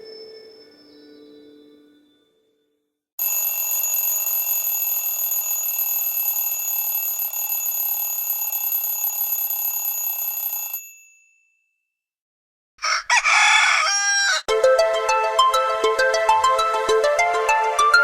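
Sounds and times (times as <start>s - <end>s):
telephone bell ringing: 3.2s - 11.4s.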